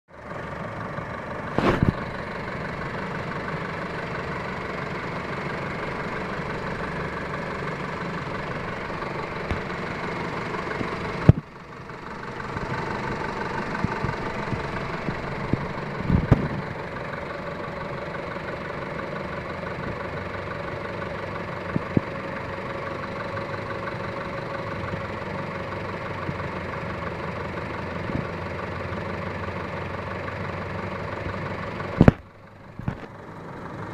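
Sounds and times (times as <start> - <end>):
car engine idling: 0.1 - 33.9
sharp engine thumps: 1.5 - 2.3, 5.4 - 16.8, 31.9 - 33.2.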